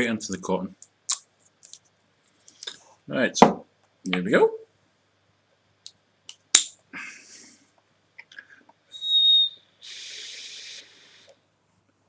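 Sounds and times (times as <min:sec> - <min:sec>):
high whistle of vape draw: 0:08.9 - 0:11.3
hissing exhale: 0:09.8 - 0:11.4.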